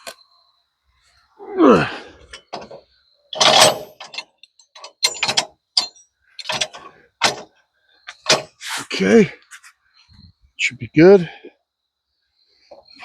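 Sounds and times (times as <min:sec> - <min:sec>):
metal parts clanking: 0:02.3 - 0:07.5, 0:08.1 - 0:08.6
loud metal clatter: 0:03.4 - 0:07.4.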